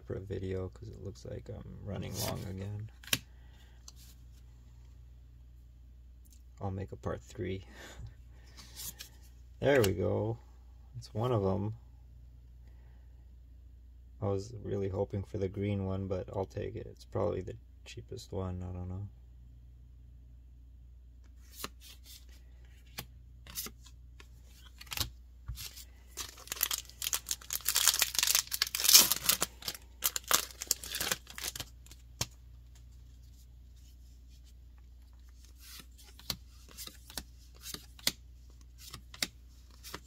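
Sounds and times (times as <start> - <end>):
foil wrapper tearing and crinkling: 26.1 - 31.7.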